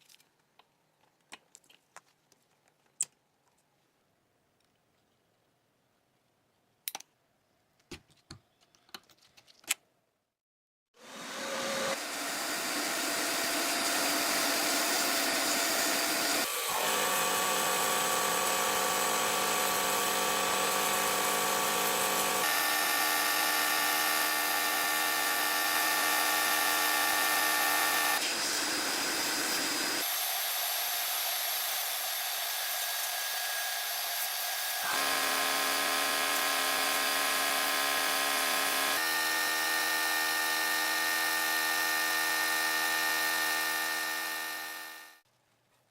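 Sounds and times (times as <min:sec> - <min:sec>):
power tool whining: 0:11.0 - 0:45.2.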